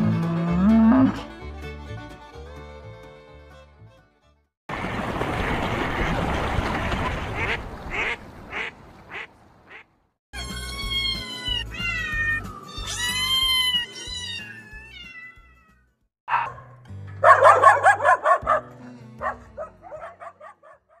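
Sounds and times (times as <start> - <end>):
background music: 0.0 - 4.5, 10.4 - 15.5, 16.3 - 20.7
cat meowing: 10.4 - 15.8.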